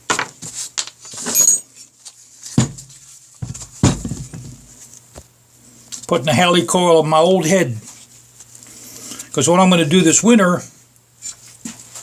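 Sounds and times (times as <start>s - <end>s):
metal tools clinking on workbench: 1.2s - 1.7s.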